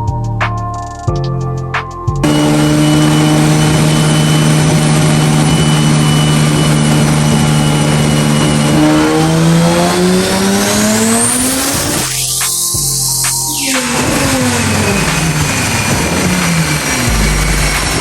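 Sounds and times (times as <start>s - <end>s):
car engine revving: 2.2s - 12.5s, 13.5s - 18.0s
high turbo whine: 2.2s - 18.0s.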